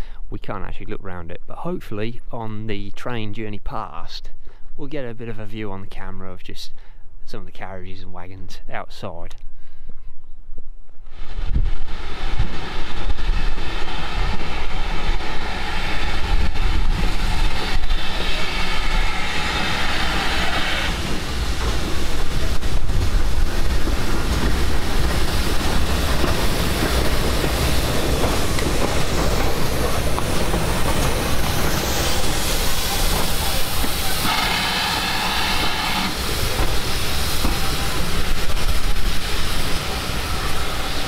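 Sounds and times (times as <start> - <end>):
train wheels rumbling on track: 11.1 - 41.0.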